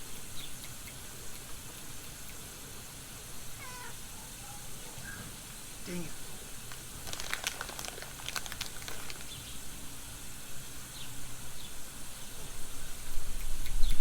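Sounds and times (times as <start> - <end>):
light clicks and rustles: 6.7 - 9.5.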